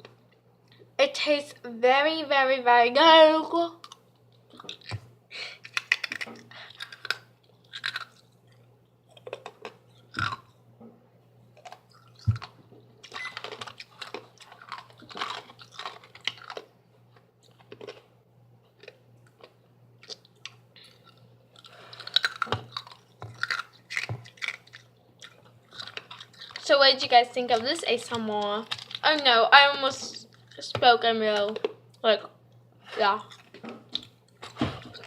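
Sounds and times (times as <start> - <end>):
steady low hum: 0.0 - 35.0
chewing and crunching ice: 3.8 - 10.6, 11.6 - 29.2, 33.1 - 35.0.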